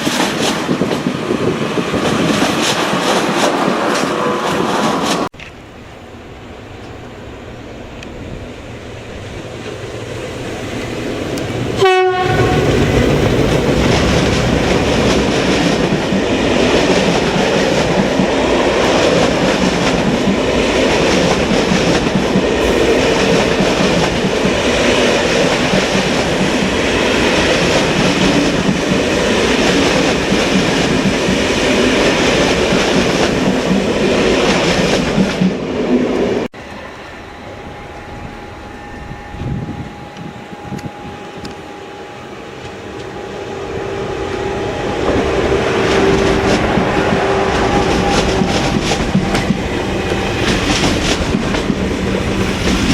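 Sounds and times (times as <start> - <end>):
train wheels clattering on rails: 0.0 - 5.5, 9.3 - 35.6, 45.0 - 52.9
train horn blast: 11.7 - 13.2, 37.2 - 48.8.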